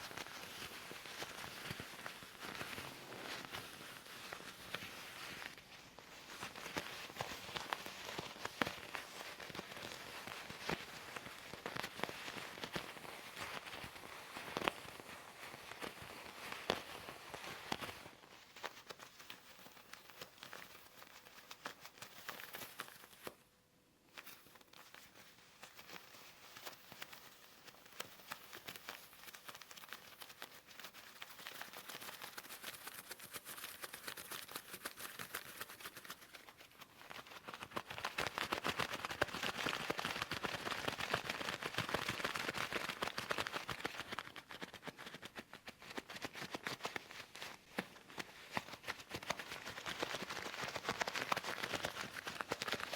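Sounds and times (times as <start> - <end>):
leather gloves crackling and creaking: 0.0 - 23.4.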